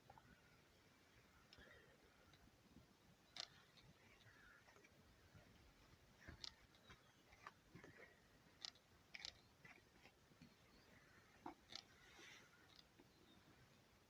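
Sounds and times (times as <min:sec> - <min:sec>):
faint small clicks and ticks: 0:01.4 - 0:13.2.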